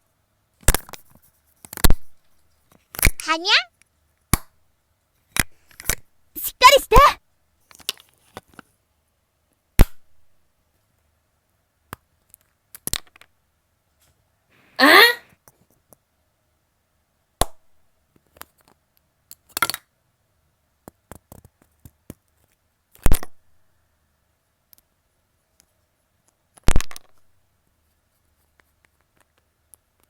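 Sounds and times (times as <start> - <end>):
objects being handled: 0.6 - 3.6.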